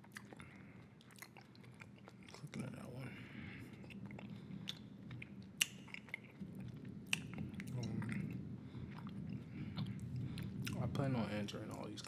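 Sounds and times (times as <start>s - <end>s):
bubble gum chewing: 3.7s - 10.8s.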